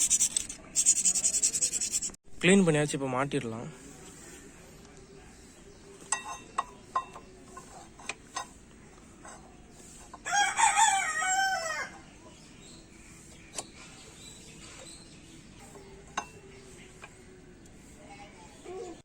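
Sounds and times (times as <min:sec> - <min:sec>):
rooster crowing: 0:10.2 - 0:12.0.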